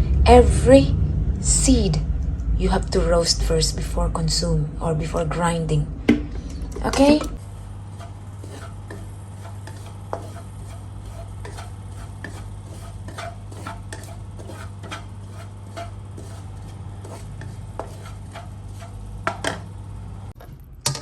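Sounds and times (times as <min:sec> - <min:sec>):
electric grinder humming: 0:06.5 - 0:20.3.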